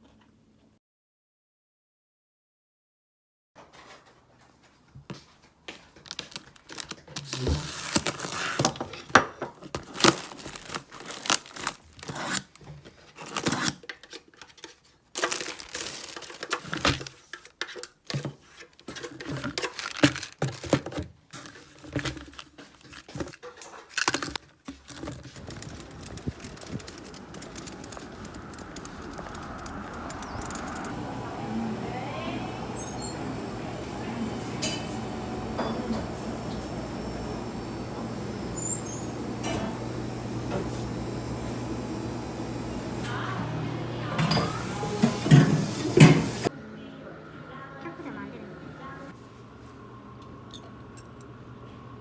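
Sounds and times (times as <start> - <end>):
wrapping crinkling and tearing: 5.9 - 9.0, 9.6 - 18.0, 18.6 - 30.9
sharp clicks: 25.4 - 30.9.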